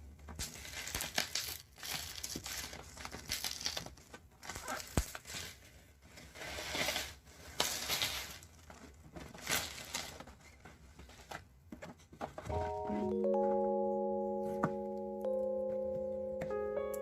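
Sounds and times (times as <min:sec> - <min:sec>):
packaging crinkling and rustling: 0:00.3 - 0:12.7
music tones: 0:12.5 - 0:17.0.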